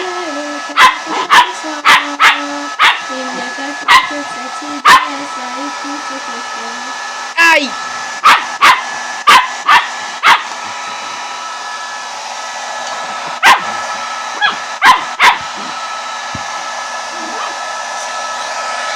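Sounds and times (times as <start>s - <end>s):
hair dryer whirring: 0.0s - 18.9s
dog barking: 0.8s - 3.1s, 3.9s - 4.2s, 4.8s - 5.1s, 8.2s - 10.5s, 13.4s - 13.8s, 14.4s - 15.6s.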